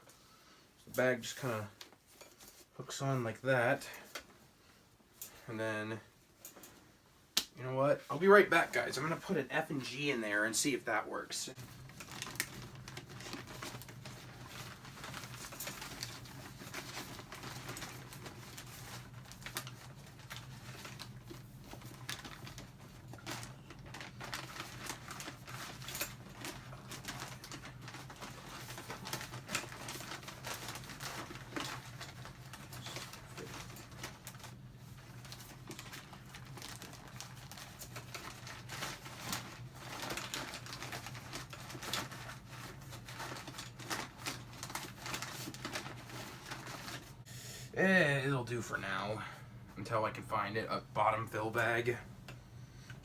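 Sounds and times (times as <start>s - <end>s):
small clicks and rustles: 11.6s - 47.1s.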